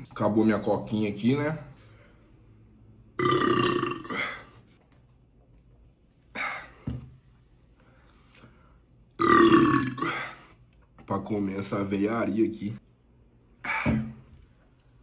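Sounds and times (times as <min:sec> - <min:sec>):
man belching: 0:03.2 - 0:04.4, 0:09.2 - 0:10.4.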